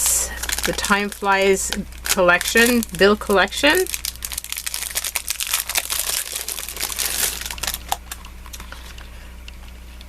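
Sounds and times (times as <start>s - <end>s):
packaging crinkling: 0.2s - 9.0s.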